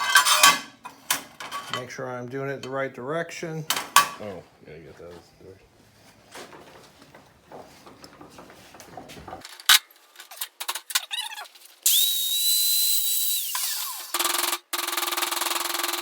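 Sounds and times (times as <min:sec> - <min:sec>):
power tool whining: 0:11.8 - 0:16.0.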